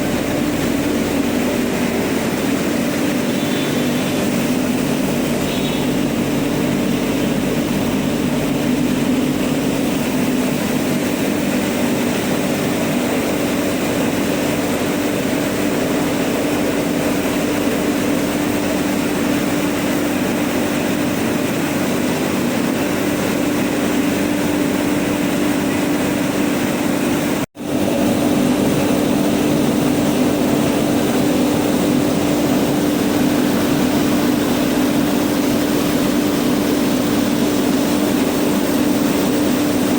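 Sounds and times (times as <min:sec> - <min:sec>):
rice milling machine drone: 0:00.0 - 0:39.9.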